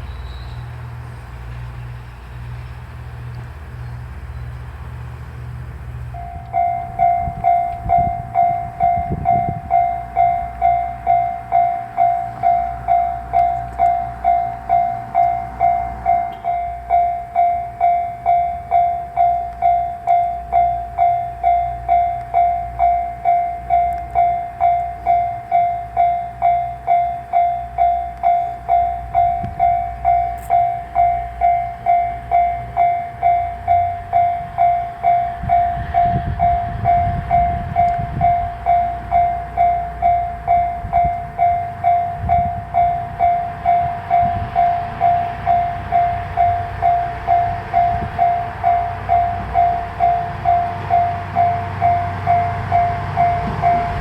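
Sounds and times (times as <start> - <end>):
level-crossing warning bell: 0.0 - 54.0.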